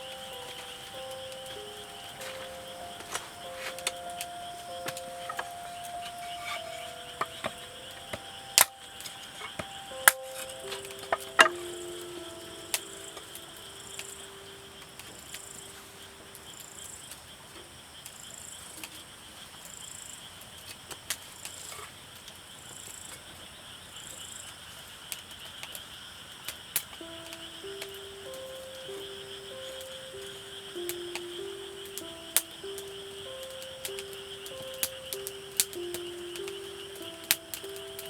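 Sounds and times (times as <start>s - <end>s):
faint high pulsing chirp: 0.0s - 17.1s, 27.0s - 38.0s
campfire crackling and popping: 0.0s - 18.2s, 25.1s - 38.0s
insects chirring: 0.0s - 38.0s.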